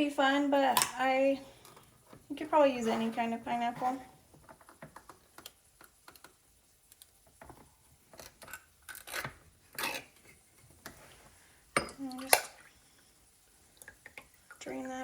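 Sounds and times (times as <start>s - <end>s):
can and bowls clicking and scraping: 3.8s - 11.0s.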